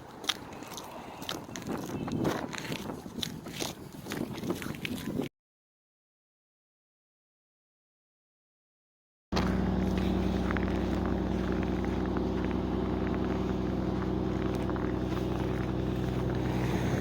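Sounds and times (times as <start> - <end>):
car engine humming: 9.4 - 17.0.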